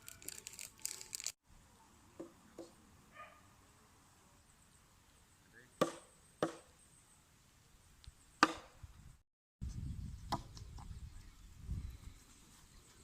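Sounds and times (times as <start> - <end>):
sharp chopping strikes: 5.8 - 6.7, 8.4 - 8.8.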